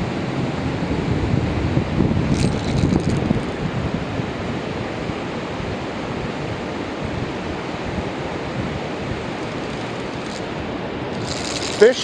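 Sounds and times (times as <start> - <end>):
water rushing: 6.7 - 12.0.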